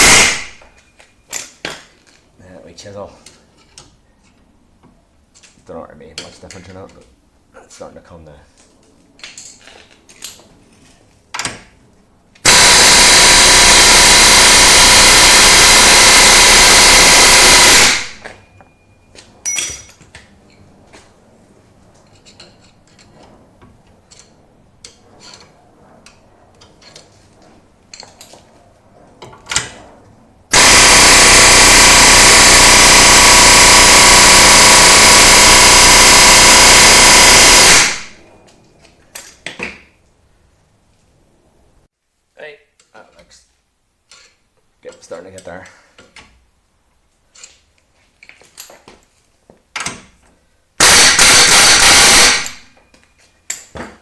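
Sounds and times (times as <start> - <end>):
power tool running: 0.0 - 0.6, 12.4 - 18.3, 30.5 - 38.2, 50.8 - 52.6.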